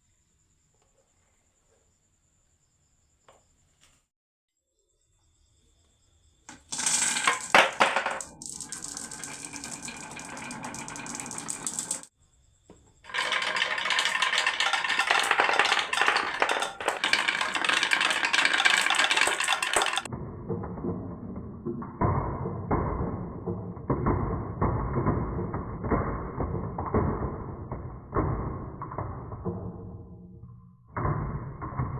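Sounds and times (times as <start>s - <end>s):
marbles rattling down track: 6.5s - 12.1s, 13.1s - 20.1s.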